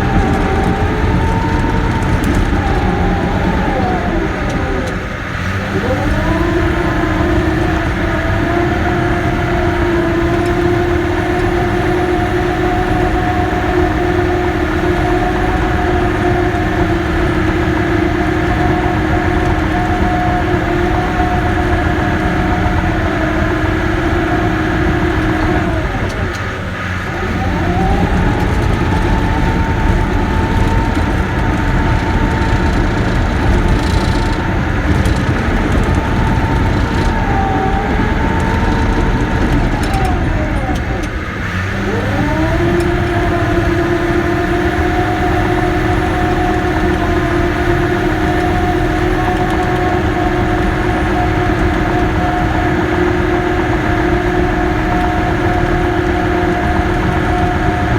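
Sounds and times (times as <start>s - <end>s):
bulldozer diesel engine running: 0.0s - 57.9s.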